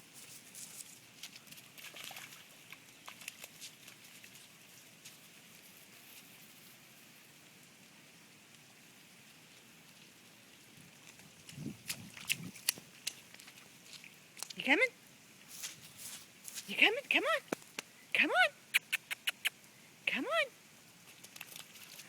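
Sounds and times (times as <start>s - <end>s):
small ticks and patter: 0.0s - 14.6s, 15.4s - 16.7s, 20.9s - 22.0s
faint outdoor hiss: 0.0s - 22.0s.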